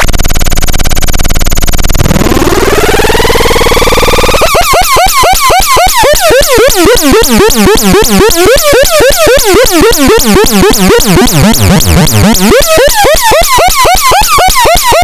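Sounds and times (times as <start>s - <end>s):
warbling electronic chirp: 2.0s - 15.0s.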